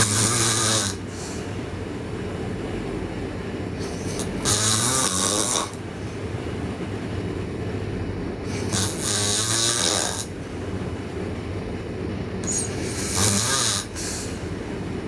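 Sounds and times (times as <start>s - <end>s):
girl snoring loudly: 0.0s - 1.4s, 3.8s - 5.8s, 8.5s - 10.4s, 12.4s - 14.4s.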